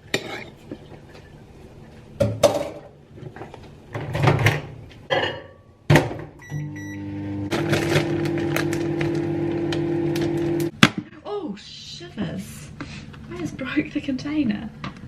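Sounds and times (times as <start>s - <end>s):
kitchen knocks and clatters: 0.0s - 1.3s, 2.2s - 6.4s
microwave humming: 6.0s - 10.7s
microwave beep: 6.4s - 7.5s.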